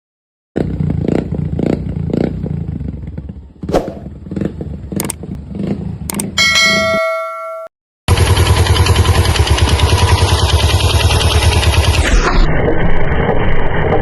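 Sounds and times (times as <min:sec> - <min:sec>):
ringing metallic chime: 0:06.4 - 0:07.7
motorcycle engine knocking: 0:08.1 - 0:11.9.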